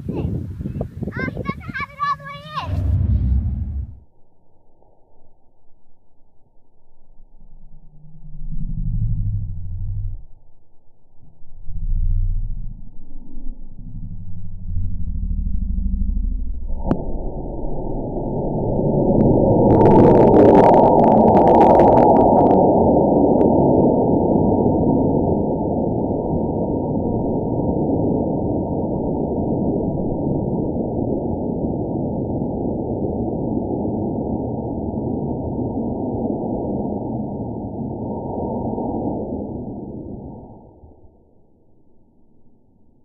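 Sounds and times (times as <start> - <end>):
loud dull rushing rumble: 0.0 - 4.2, 13.7 - 31.2.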